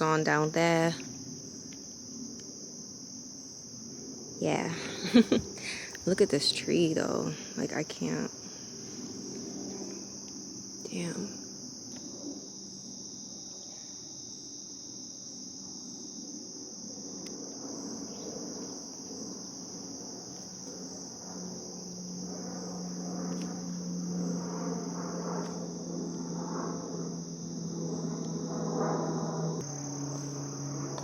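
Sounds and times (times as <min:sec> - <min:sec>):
insect chorus trilling: 0:00.0 - 0:31.0
low steady hum: 0:17.6 - 0:31.0.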